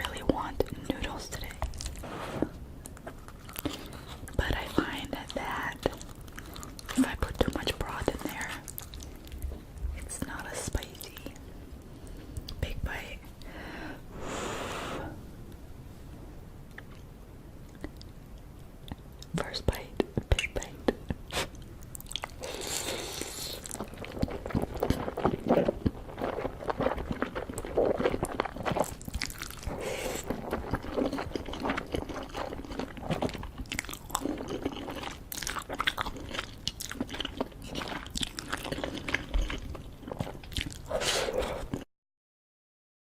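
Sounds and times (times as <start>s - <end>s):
close biting and chewing: 21.3s - 41.8s.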